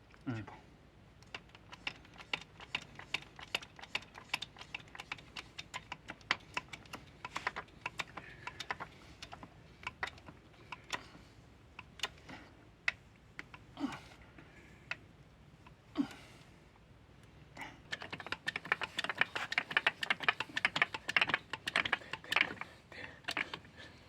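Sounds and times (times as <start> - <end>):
crimping tool clicking: 17.9 - 23.7.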